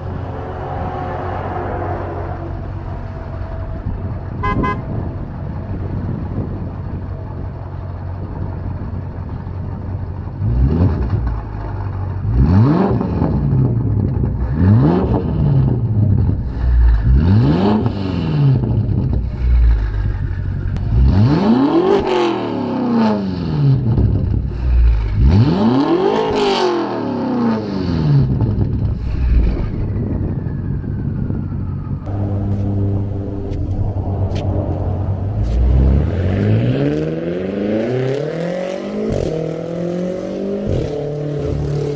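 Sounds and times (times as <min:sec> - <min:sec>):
car engine revving: 0:12.2 - 0:30.6, 0:31.3 - 0:41.9.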